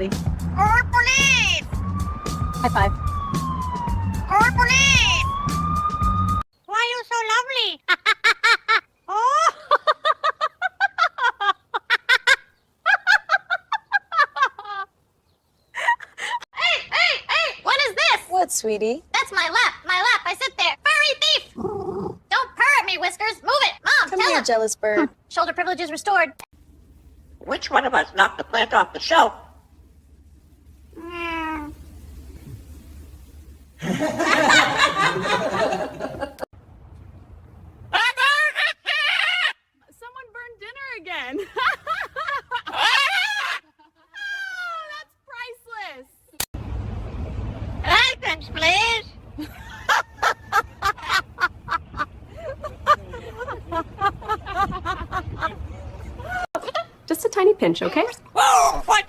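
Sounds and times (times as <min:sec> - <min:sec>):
high-pitched laughter: 0:07.8 - 0:14.9, 0:15.8 - 0:17.9, 0:37.9 - 0:39.6, 0:41.4 - 0:45.0, 0:49.4 - 0:55.6
cat meowing: 0:30.9 - 0:31.8.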